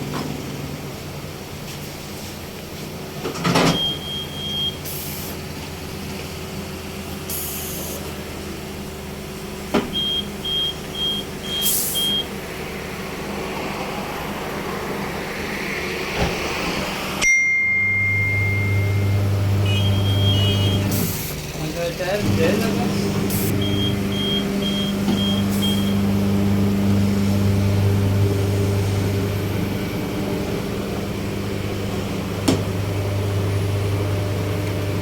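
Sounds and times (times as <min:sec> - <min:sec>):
loud low motor hum: 0:00.0 - 0:35.0
compressed air hisses: 0:07.3 - 0:08.0
high beeps: 0:10.0 - 0:12.3, 0:17.2 - 0:20.9, 0:23.6 - 0:26.0
steady mechanical hum: 0:17.8 - 0:35.0.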